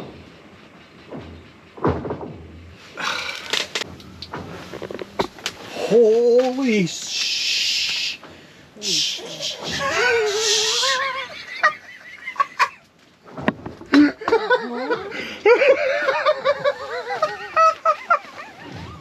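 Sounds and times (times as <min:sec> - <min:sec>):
sharp knocks: 0:01.0 - 0:02.8
high strained exclamations: 0:08.8 - 0:11.2
person laughing excitedly: 0:09.1 - 0:12.8, 0:14.0 - 0:19.0.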